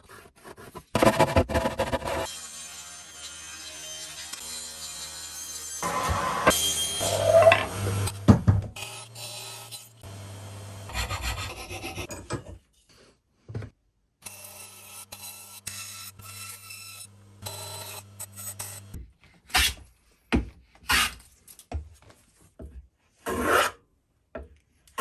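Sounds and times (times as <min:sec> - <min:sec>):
sanding wood by hand: 0:10.9 - 0:12.1.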